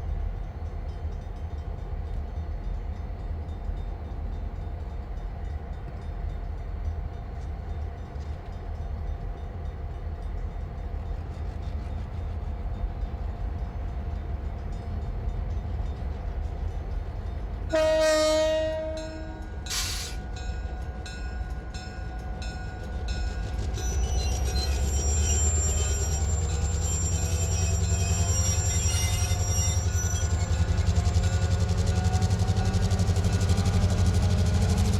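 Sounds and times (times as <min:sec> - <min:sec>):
trains rumbling: 0:00.0 - 0:34.9
train horn blast: 0:17.7 - 0:20.2
short hiss: 0:19.7 - 0:20.2.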